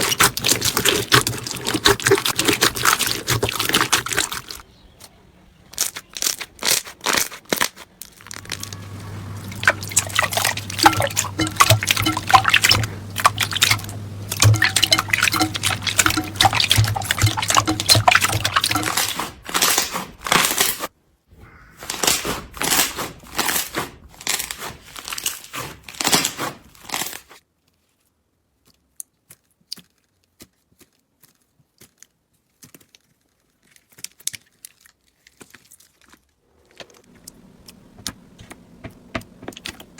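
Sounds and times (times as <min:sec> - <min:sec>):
low steady hum: 0:08.2 - 0:19.0.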